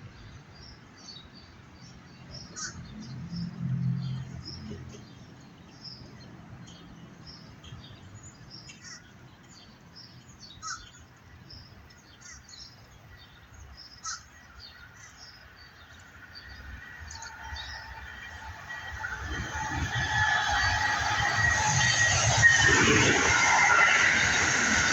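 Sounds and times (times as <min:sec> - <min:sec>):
train approaching rumble: 0:00.0 - 0:12.0, 0:14.7 - 0:24.9
small birds chirping: 0:00.2 - 0:18.3.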